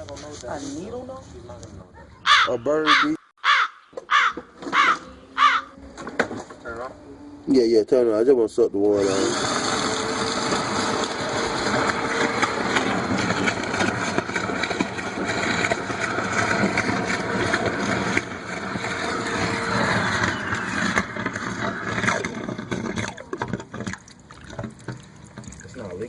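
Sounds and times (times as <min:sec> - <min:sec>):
wet vacuum sucking water: 0:08.9 - 0:26.0.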